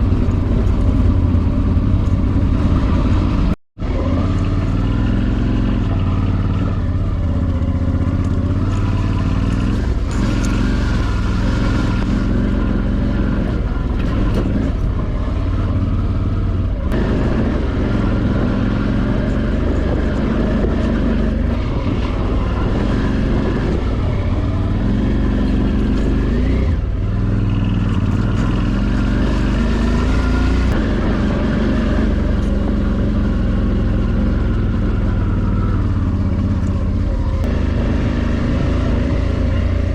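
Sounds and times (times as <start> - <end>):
motorcycle engine running: 0.0 - 39.9
road and wind noise: 0.0 - 39.9.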